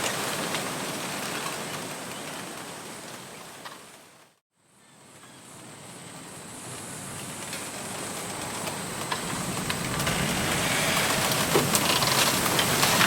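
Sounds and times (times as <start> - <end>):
wind gusting through bamboo: 5.1 - 13.0.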